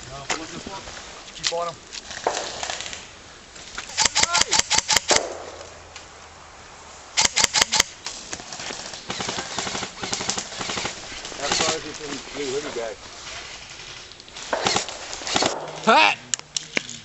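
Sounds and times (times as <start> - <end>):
airsoft gun firing bursts: 4.0 - 5.5, 7.2 - 7.9, 8.7 - 11.8, 14.5 - 15.8.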